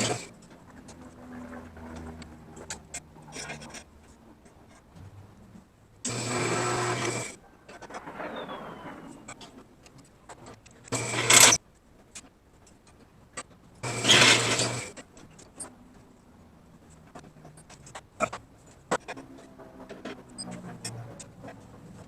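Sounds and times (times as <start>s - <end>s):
welding bursts: 10.9s - 11.6s, 13.8s - 15.0s.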